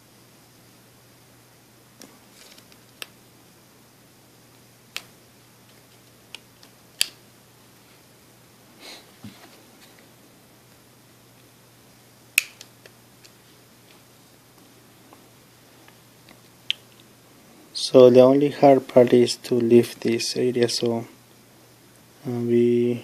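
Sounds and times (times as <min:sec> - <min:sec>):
plastic clicks and snaps: 0:05.7 - 0:07.2, 0:12.4 - 0:13.4.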